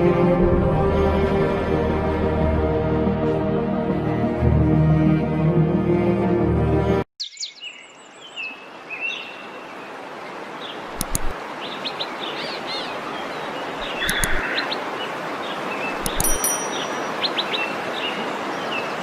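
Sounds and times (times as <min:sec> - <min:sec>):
birds chirping and trilling: 0:07.2 - 0:19.0
waterfall rushing: 0:10.4 - 0:19.0.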